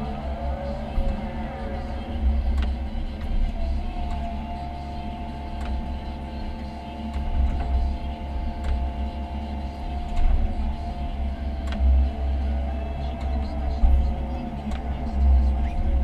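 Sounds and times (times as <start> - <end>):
excavator engine rumble: 0.0 - 16.0
high steady whine: 0.0 - 16.0
faint clicks: 11.6 - 11.9.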